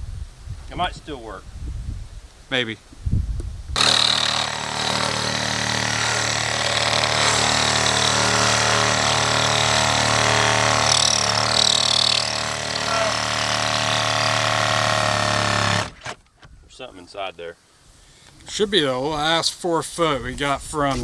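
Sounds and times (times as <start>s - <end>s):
motor humming: 3.8s - 16.1s.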